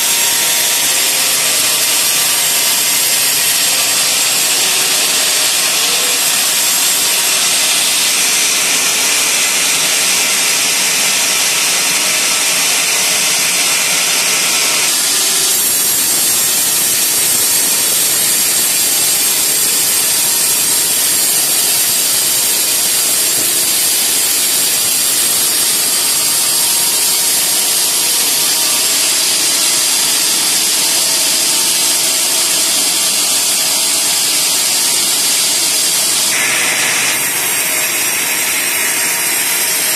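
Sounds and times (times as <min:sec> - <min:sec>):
band saw cutting through log: 0:00.0 - 0:39.9.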